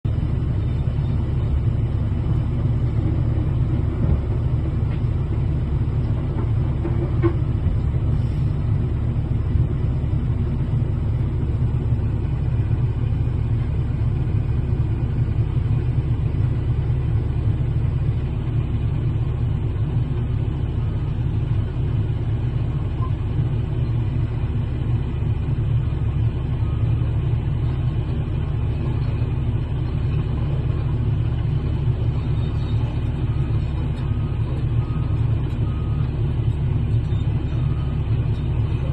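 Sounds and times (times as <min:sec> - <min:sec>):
diesel engine deep rumble: 0:00.0 - 0:38.9.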